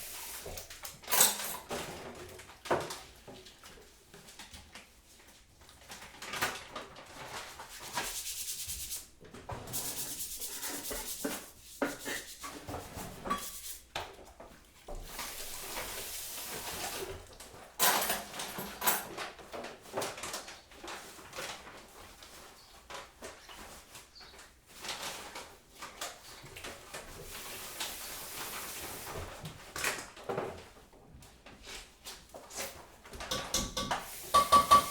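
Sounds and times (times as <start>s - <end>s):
scraping in a kitchen: 0.0s - 34.9s
utensils and crockery clicking: 1.0s - 1.7s, 33.2s - 34.9s.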